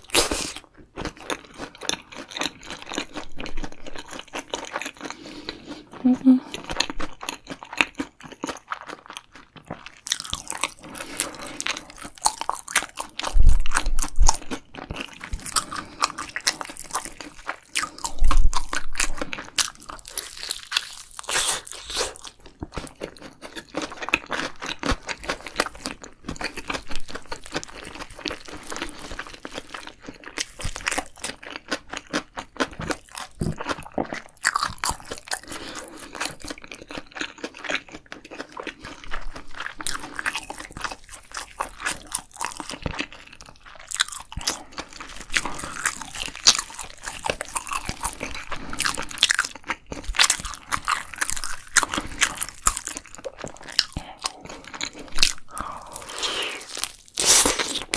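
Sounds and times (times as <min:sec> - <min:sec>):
crunchy chewing: 0:00.0 - 0:57.9.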